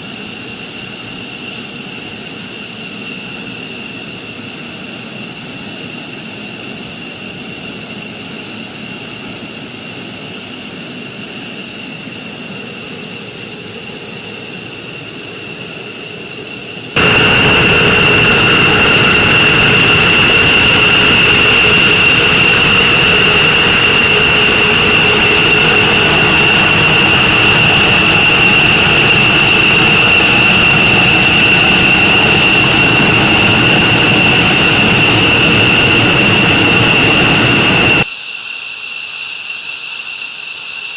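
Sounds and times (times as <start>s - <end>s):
jet engine whine: 0.0s - 38.1s
loud rushing noise: 17.0s - 38.0s.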